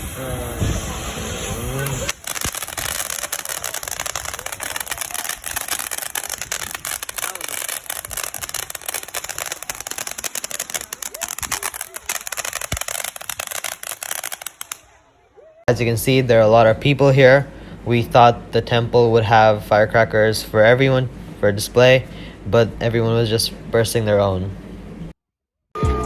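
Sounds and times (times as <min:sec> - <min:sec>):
firecrackers popping: 0:00.0 - 0:15.2
voices: 0:00.0 - 0:24.6.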